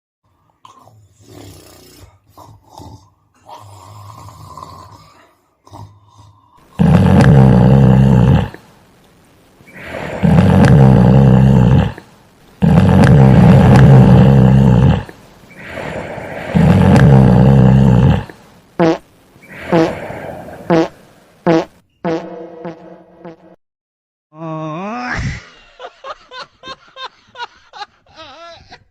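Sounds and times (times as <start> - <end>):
loud exaggerated snoring: 0.7 - 8.7, 9.7 - 22.8.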